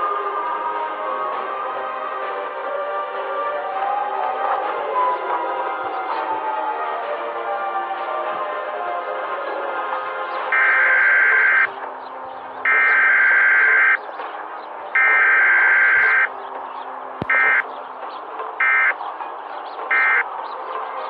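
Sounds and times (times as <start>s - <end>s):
high-pitched alarm beeps: 10.6s - 11.7s, 12.7s - 14.0s, 15.0s - 16.3s, 17.2s - 17.6s, 18.6s - 19.0s, 19.9s - 20.2s.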